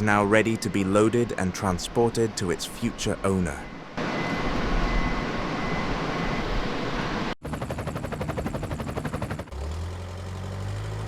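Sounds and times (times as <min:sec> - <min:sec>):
fast even pulsing: 0:07.4 - 0:09.6.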